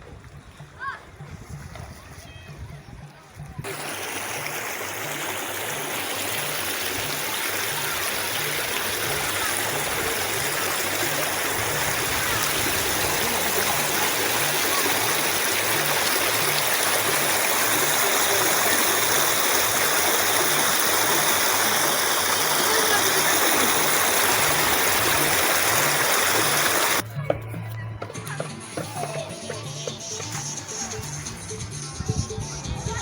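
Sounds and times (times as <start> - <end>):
stream water rushing: 3.6 - 27.0.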